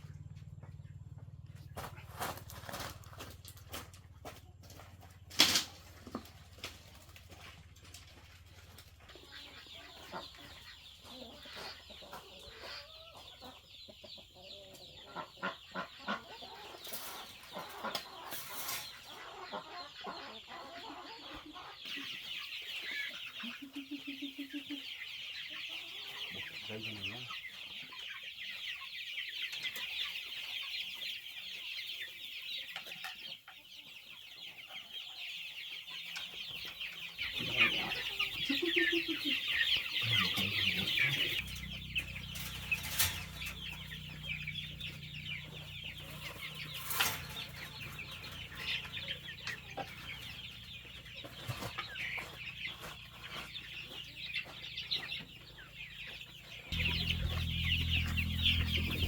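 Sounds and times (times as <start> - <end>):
chickens clucking: 0.0 - 59.0
low steady hum: 56.7 - 59.0.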